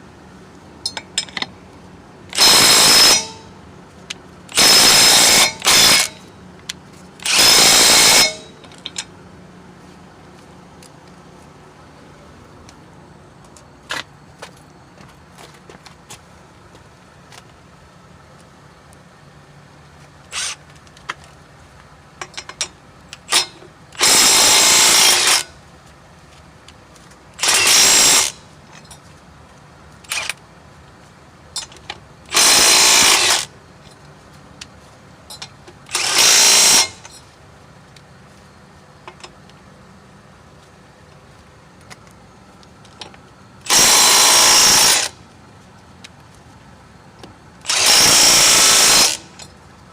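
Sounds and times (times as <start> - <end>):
impact wrench hammering: 2.4 - 3.5, 4.5 - 6.2, 7.2 - 9.0.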